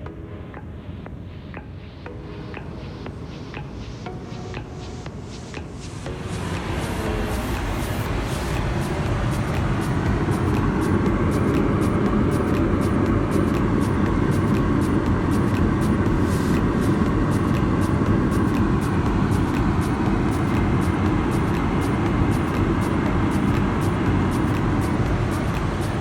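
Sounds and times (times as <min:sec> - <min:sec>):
airplane cabin engine rumble: 0:05.5 - 0:26.0.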